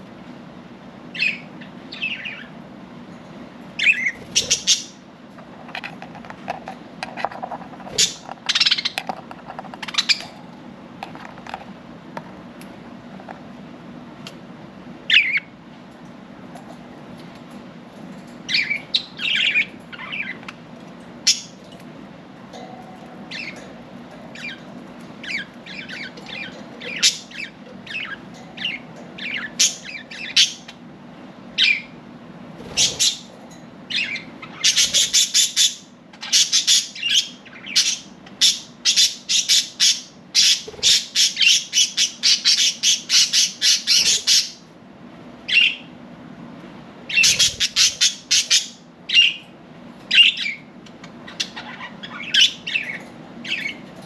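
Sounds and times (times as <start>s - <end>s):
budgerigars chirping and squawking: 1.1s - 2.6s, 3.8s - 5.0s, 7.9s - 10.4s, 15.1s - 15.5s, 18.5s - 20.6s, 21.2s - 21.6s, 23.3s - 23.7s, 24.3s - 30.8s, 31.6s - 32.0s, 32.6s - 44.6s, 45.5s - 45.9s, 47.1s - 49.4s, 50.1s - 54.0s.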